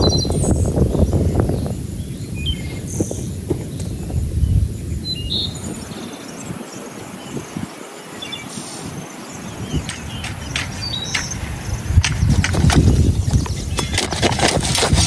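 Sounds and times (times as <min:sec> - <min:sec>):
bird chirps: 0:00.0 - 0:12.4
sharp clicks and knocks: 0:09.9 - 0:11.4.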